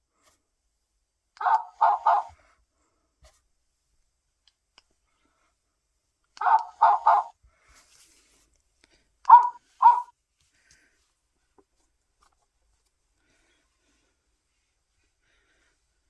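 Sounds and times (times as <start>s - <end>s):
toy dog barking: 1.4s - 2.4s, 6.4s - 7.3s, 9.3s - 10.1s.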